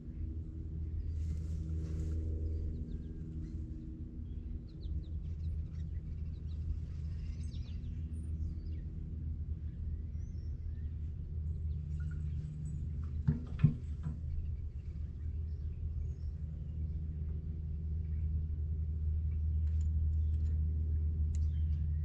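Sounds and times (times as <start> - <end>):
low machine hum: 0.0 - 22.0
birds chirping: 2.5 - 8.9.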